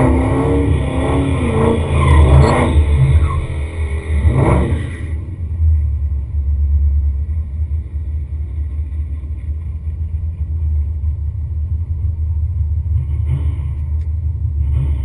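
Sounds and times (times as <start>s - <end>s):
deep low rumble: 0.0s - 15.0s.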